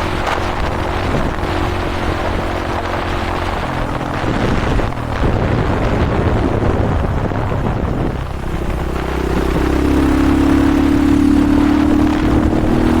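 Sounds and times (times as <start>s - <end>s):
dirt bike engine running: 0.0s - 13.0s.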